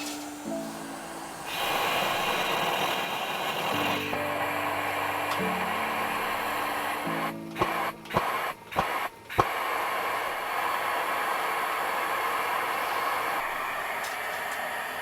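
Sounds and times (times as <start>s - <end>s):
background music: 0.0s - 9.4s.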